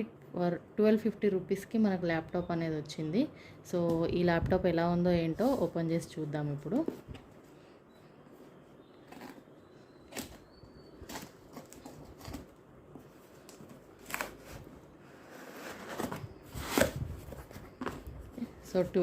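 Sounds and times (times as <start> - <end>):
packaging crinkling and rustling: 11.0 - 14.8.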